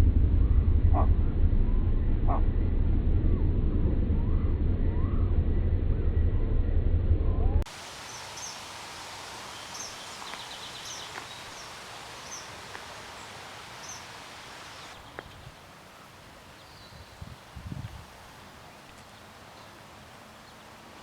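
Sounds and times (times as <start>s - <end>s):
outdoor hiss: 7.7s - 21.0s
bird chirping: 8.0s - 17.3s
bird trill: 9.5s - 15.4s.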